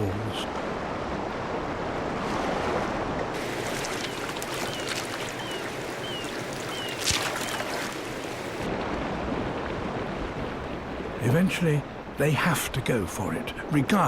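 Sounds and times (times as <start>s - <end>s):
water splashes: 0.0s - 12.2s
waterfall rushing: 3.4s - 8.7s
bird chirping: 4.0s - 8.6s.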